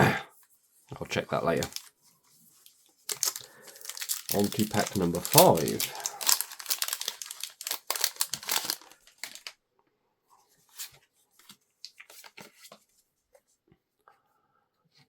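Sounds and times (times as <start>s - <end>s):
cards rustling and clicking: 1.5s - 2.0s, 2.6s - 9.5s
foil wrapper crinkling and tearing: 1.5s - 2.0s, 2.6s - 9.5s.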